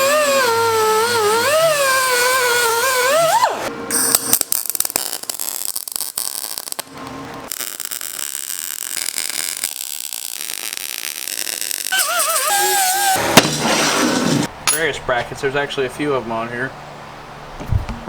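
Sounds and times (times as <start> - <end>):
grinder grinding steel: 0.0 - 5.3, 7.6 - 14.5.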